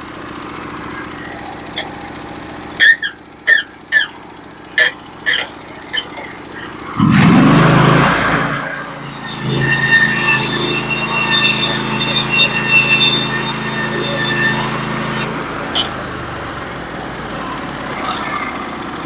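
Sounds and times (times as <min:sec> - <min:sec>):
bandsaw mill engine running: 0:00.0 - 0:19.0
saw blade cutting log: 0:07.0 - 0:16.2.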